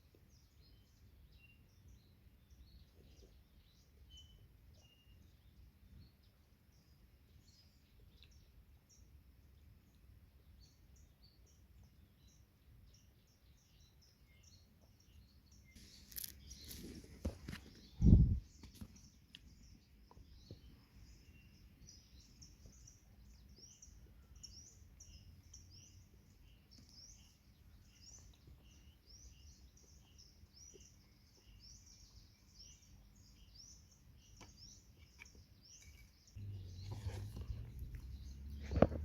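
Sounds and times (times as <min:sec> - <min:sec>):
quiet forest ambience: 0:00.0 - 0:39.0
songbird chirping: 0:00.0 - 0:39.0
low rumbling noise: 0:36.4 - 0:39.0.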